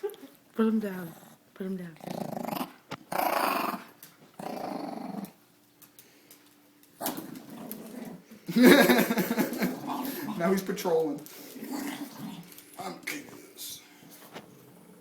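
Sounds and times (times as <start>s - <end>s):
puppy growling: 0.7s - 5.4s, 7.0s - 10.7s, 11.4s - 12.8s, 14.4s - 15.0s.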